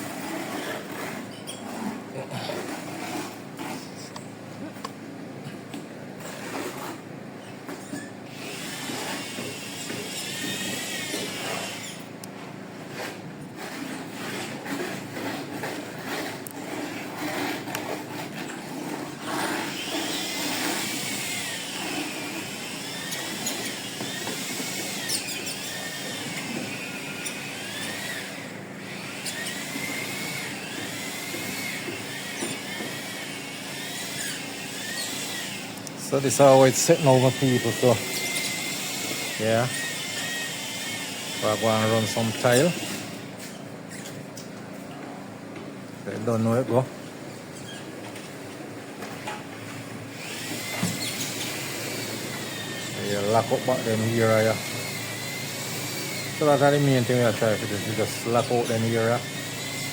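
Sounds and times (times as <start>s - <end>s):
power tool whining: 7.8s - 12.3s, 13.0s - 44.2s, 49.3s - 59.9s.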